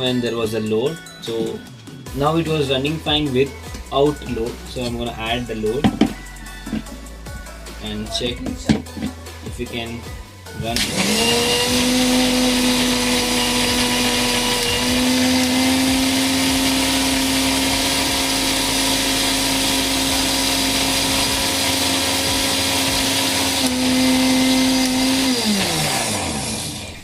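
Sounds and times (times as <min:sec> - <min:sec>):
mixer grinder motor whining: 0:10.6 - 0:27.0.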